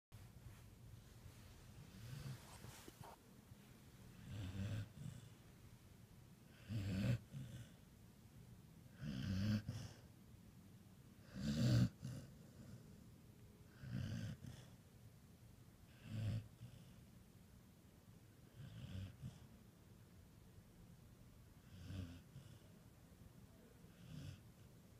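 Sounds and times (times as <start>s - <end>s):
quiet breathing: 0.2s - 8.0s, 11.2s - 15.0s, 15.8s - 17.4s, 21.5s - 24.9s.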